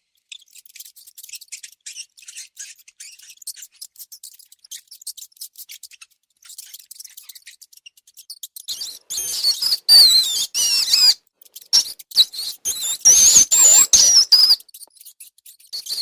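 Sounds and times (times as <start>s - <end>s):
rats squeaking: 0.2s - 16.0s.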